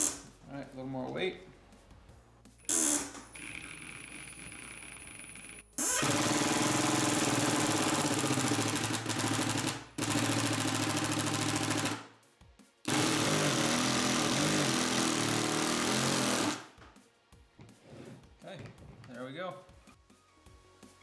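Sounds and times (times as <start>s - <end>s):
impact driver hammering screw: 5.9s - 12.0s, 12.9s - 16.7s.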